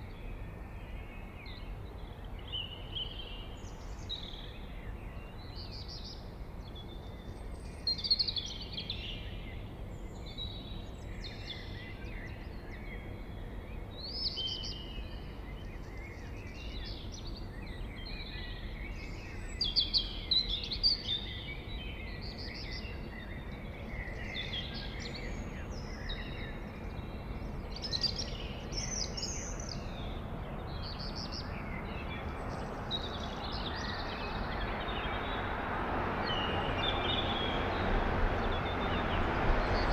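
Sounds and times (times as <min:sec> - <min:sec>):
blackbird singing: 0:14.1 - 0:35.5.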